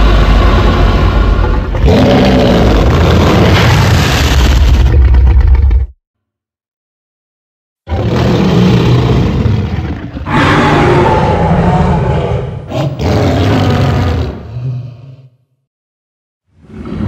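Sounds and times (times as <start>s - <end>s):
monster roar: 0.0s - 5.6s, 7.9s - 15.4s.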